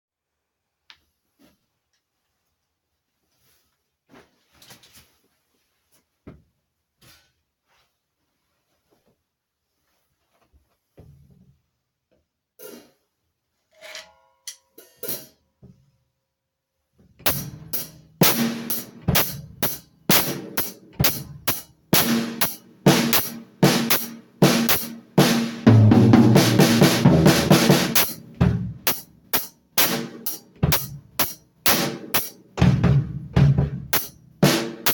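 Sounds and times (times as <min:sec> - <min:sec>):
drum kit playing: 0:17.2 - 0:34.9
cymbals: 0:17.3 - 0:32.4, 0:33.9 - 0:34.9.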